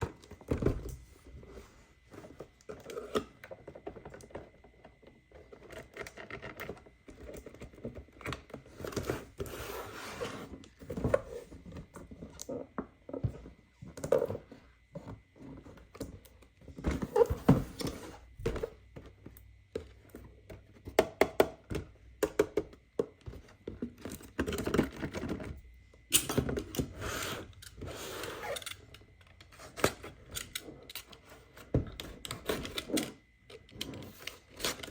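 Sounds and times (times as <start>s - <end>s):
clicks taps and knocks of packaging: 16.0s - 25.5s.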